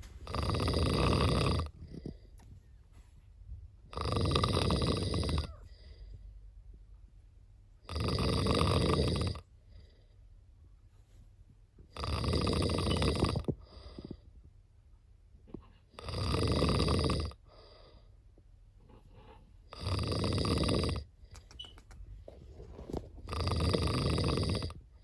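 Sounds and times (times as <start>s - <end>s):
cat snoring: 0.0s - 2.4s, 3.9s - 6.0s, 7.8s - 10.0s, 11.9s - 14.2s, 15.9s - 18.0s, 19.7s - 21.7s, 22.4s - 25.0s
cat breathing: 0.0s - 3.2s, 13.6s - 14.2s.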